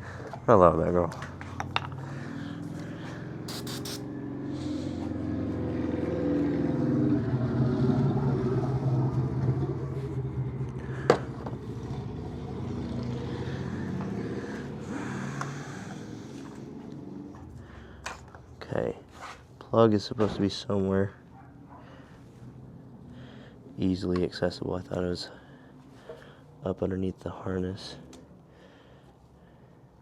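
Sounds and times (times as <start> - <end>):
vehicle engine running: 1.1 - 18.5
sharp click: 3.5 - 4.0.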